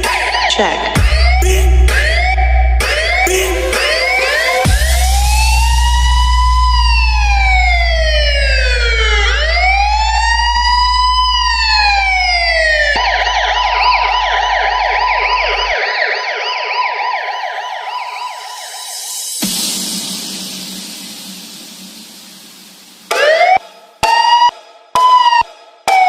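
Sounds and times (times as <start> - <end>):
deep steady bass tone: 0.0 - 15.8
police siren wailing and yelping: 0.0 - 19.3, 23.1 - 26.0.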